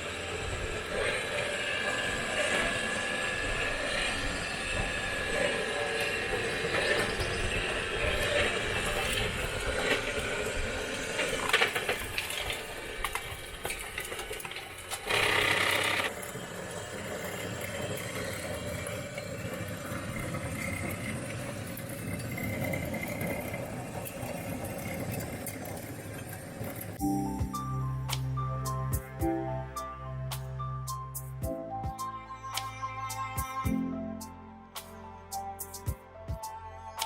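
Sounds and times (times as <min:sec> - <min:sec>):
small electric motors whirring: 0:00.0 - 0:23.7.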